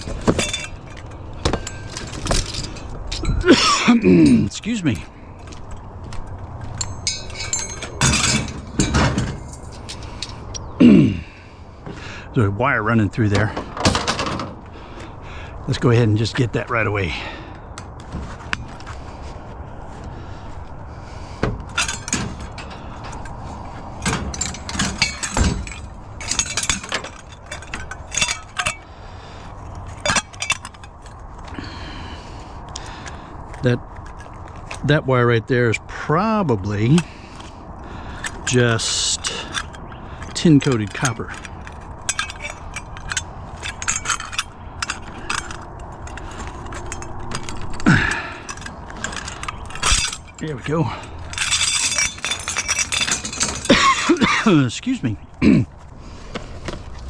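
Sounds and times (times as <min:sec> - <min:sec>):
metal and plastic parts clattering: 0:00.0 - 0:10.8, 0:13.1 - 0:15.2, 0:21.1 - 0:35.0, 0:36.7 - 0:57.0
metal scrap clinking and rattling: 0:00.0 - 0:10.8, 0:13.2 - 0:14.7, 0:21.3 - 0:34.9, 0:36.6 - 0:55.8.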